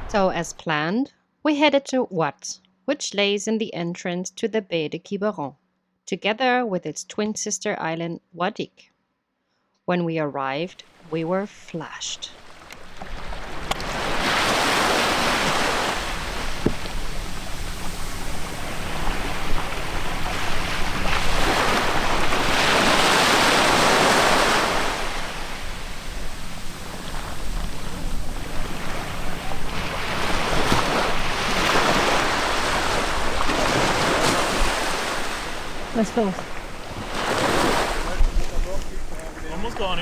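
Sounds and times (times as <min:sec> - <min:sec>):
sea waves washing in: 0:00.0 - 0:00.6, 0:10.9 - 0:40.0
wind on microphone: 0:13.0 - 0:40.0.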